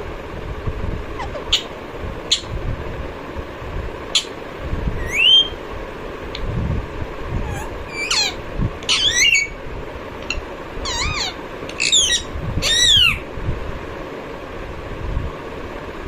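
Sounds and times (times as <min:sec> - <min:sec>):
parrot squawking: 0:01.2 - 0:02.5, 0:04.1 - 0:04.4, 0:05.0 - 0:05.6, 0:07.4 - 0:09.6, 0:10.2 - 0:13.2.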